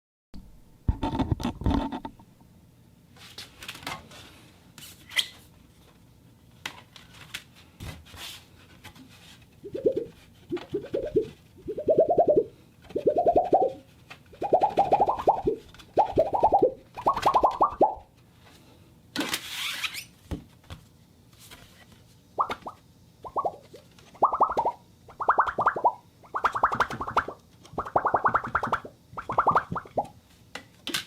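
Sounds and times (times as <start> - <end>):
rippling plastic bursts rising in pitch: 9.6 - 13.8, 14.4 - 18.0, 22.4 - 30.1.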